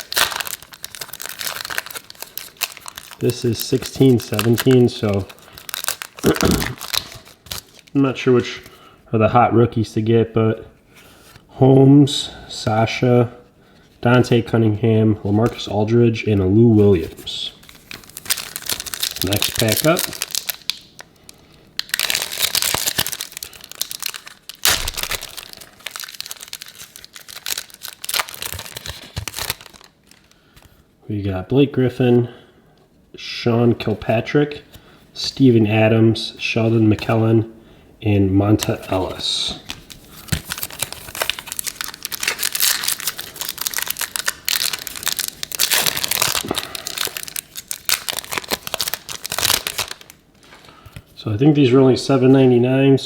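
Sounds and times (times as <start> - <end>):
card pack wrapper crinkling and tearing: 0.0 - 8.7, 16.9 - 30.7, 38.6 - 51.0.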